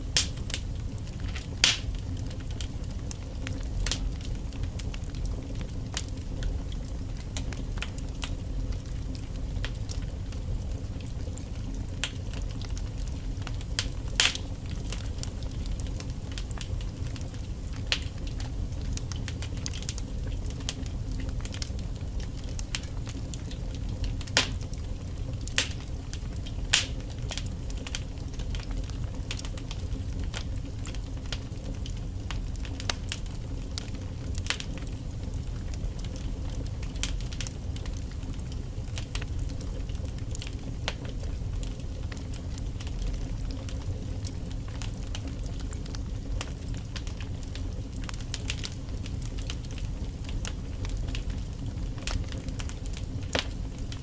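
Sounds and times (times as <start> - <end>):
fire rumbling: 0.0 - 54.0
logs crackling and popping: 0.0 - 54.0.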